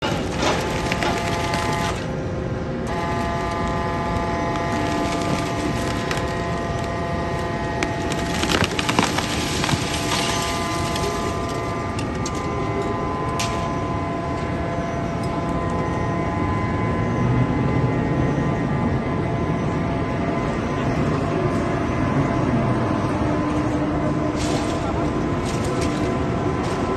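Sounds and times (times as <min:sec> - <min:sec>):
metallic clattering and cracking: 0:00.0 - 0:02.0, 0:07.7 - 0:13.7
machine whine: 0:00.0 - 0:26.9.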